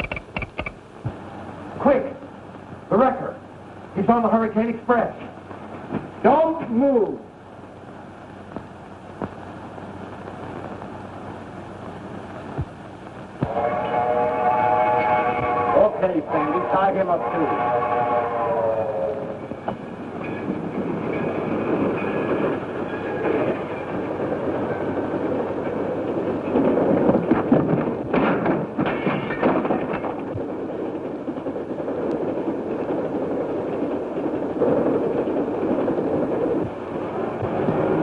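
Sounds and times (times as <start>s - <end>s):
steam train rumbling on rails: 0.0s - 38.0s
loud train clanks: 13.4s - 38.0s.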